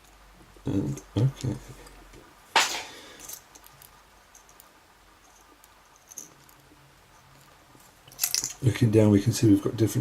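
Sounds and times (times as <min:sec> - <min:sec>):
metal lock parts scraping: 0:07.2 - 0:08.6.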